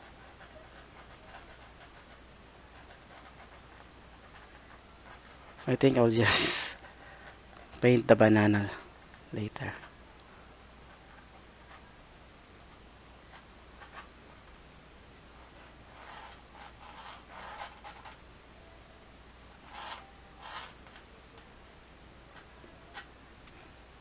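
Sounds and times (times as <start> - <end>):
pencil scratching on paper: 0.0 - 7.8, 13.3 - 14.1, 15.4 - 18.2, 19.6 - 20.8.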